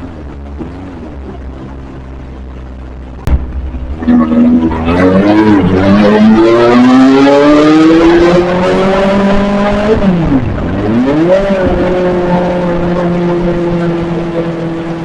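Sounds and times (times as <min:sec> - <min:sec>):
motorcycle engine buzzing: 0:00.0 - 0:15.0.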